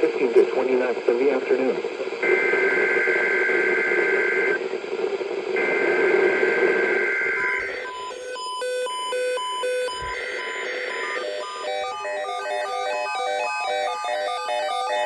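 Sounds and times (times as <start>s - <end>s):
radio hiss: 0.0s - 8.1s
two-tone digital buzz: 2.2s - 4.6s, 5.6s - 15.0s.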